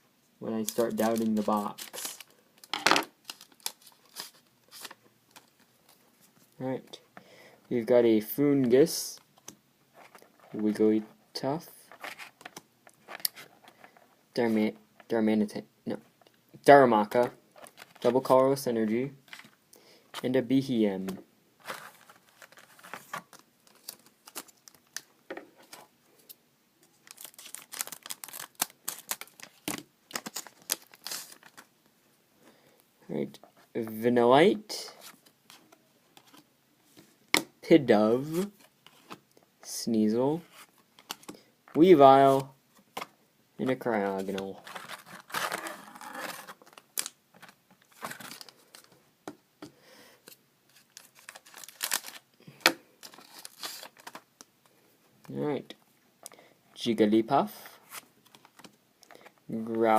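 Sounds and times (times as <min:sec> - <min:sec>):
foil wrapper and cards crinkling: 0:00.6 - 0:05.6, 0:21.6 - 0:25.8, 0:26.9 - 0:31.7, 0:44.2 - 0:49.0, 0:50.7 - 0:52.3, 0:53.0 - 0:54.2
foil wrapper crinkling: 0:27.0 - 0:31.6, 0:50.7 - 0:52.3, 0:53.0 - 0:54.2.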